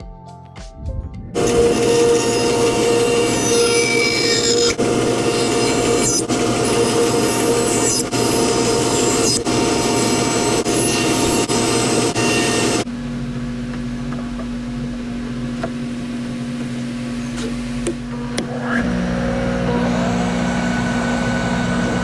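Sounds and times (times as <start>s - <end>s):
power sander on wood: 1.4s - 22.0s
low machine hum: 11.6s - 22.0s.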